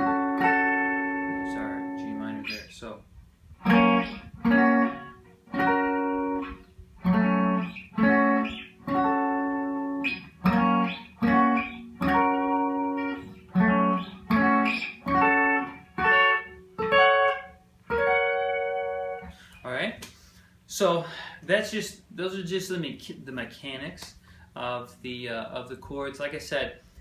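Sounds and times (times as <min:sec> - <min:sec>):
guitar chords ringing: 0:00.0 - 0:19.5.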